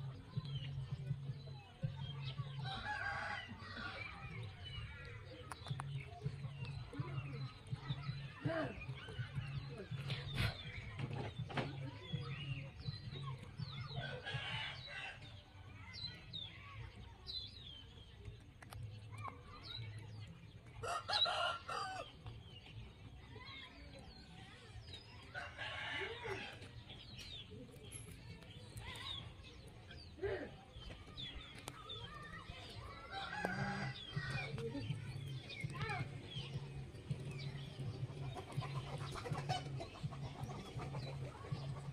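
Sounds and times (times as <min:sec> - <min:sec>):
chickens clucking: 0:18.1 - 0:41.9.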